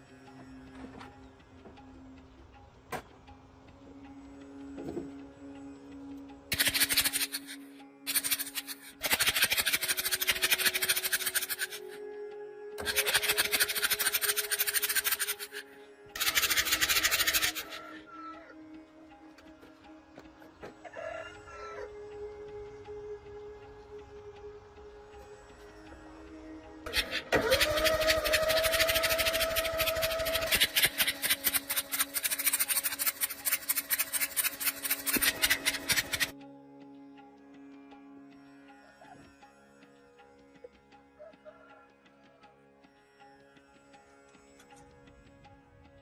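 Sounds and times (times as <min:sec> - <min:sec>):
machine clatter and whine: 0:00.0 - 0:12.0, 0:12.8 - 0:20.8, 0:26.6 - 0:36.4
faint background music: 0:00.0 - 0:46.0
rapid scrubbing strokes: 0:06.5 - 0:12.0, 0:12.8 - 0:18.0, 0:26.9 - 0:36.3.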